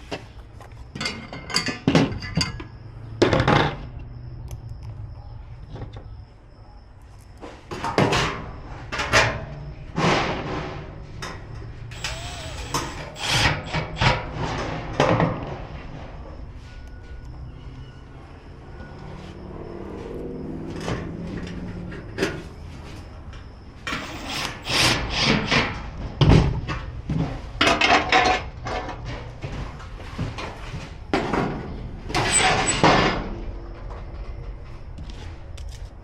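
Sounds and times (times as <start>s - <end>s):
grill parts knocking and scraping: 10.0s - 16.4s.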